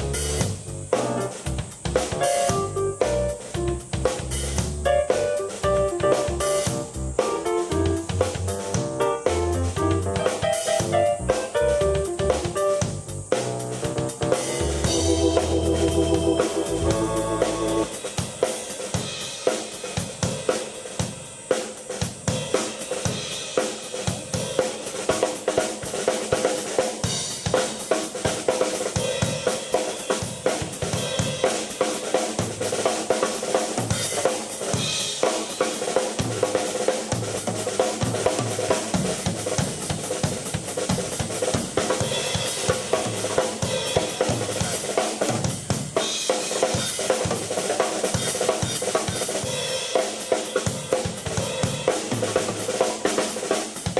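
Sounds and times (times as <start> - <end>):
rock drumming on drum kit: 0.0 - 53.9
sustained organ-like keyboard chord: 14.5 - 17.9.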